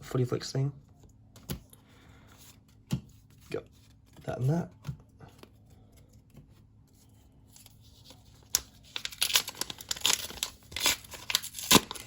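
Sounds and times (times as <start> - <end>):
wrapper crinkling and tearing: 8.4 - 12.0.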